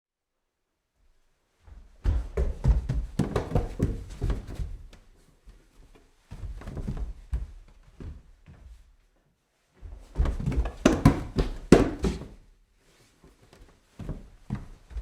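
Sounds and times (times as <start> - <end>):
footsteps climbing stairs: 1.6 - 8.8, 9.8 - 12.4.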